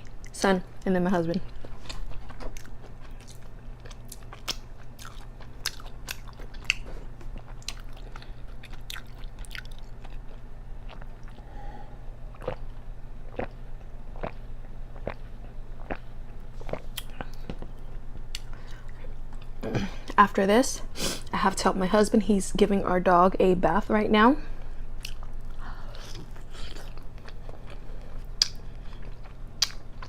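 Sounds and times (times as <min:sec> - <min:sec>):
person chewing and crunching: 0:01.3 - 0:11.6, 0:12.3 - 0:19.7, 0:25.0 - 0:30.0.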